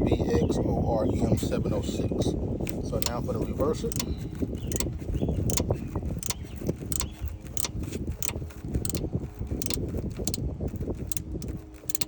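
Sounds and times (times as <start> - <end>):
ratchet wrench clicking: 2.6 - 12.0.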